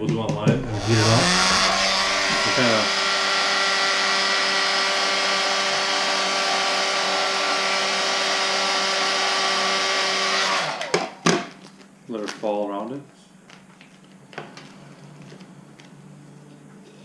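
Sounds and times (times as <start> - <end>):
heat gun fan blowing: 0.6 - 10.9.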